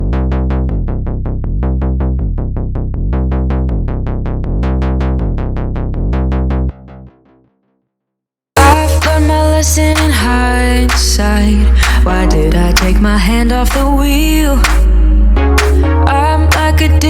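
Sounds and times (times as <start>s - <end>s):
low synth bass: 0.0s - 7.4s, 8.6s - 17.0s
loud music track: 8.6s - 17.0s
plucked synth notes: 8.6s - 17.0s.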